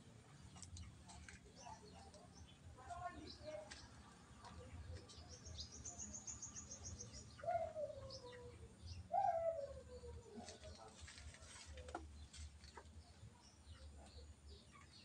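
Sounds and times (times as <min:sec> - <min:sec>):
pigeon cooing: 0:07.3 - 0:11.0.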